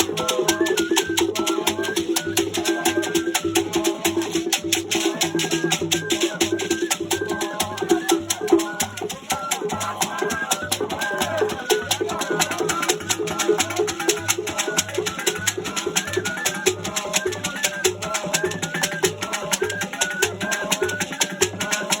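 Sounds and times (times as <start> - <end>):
percussion music with rattles: 0.0 - 22.0.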